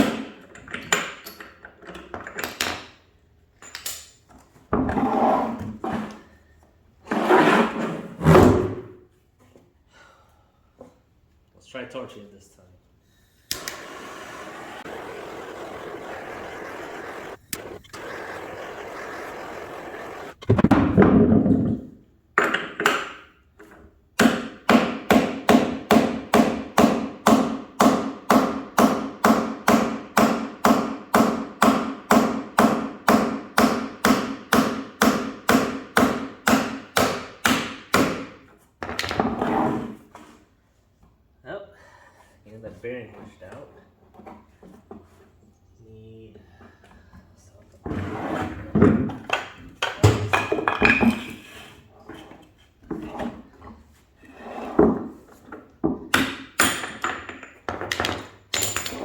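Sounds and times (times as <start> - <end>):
torch hissing: 13.6 - 20.4.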